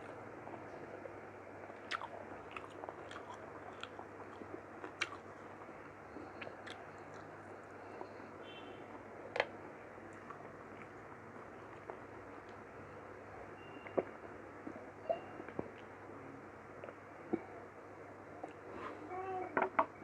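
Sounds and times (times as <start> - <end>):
person chewing food: 1.8 - 8.1, 10.1 - 12.6.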